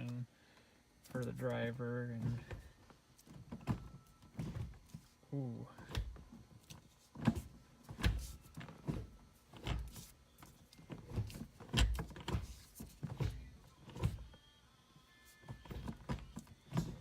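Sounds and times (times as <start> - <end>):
gear lever clunking: 5.8 - 10.1, 10.8 - 14.3, 15.5 - 17.0.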